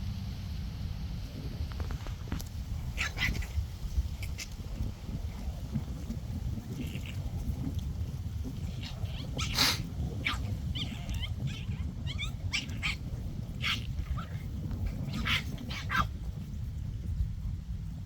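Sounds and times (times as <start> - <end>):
steady low rumble: 0.0 - 18.0
puppies yipping and squealing: 2.8 - 4.5, 8.4 - 16.1.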